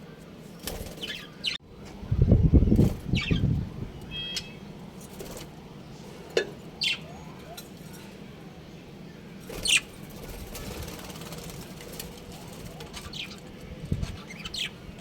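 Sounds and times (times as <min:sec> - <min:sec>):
budgerigars chirping: 0:06.8 - 0:07.6, 0:14.1 - 0:14.8.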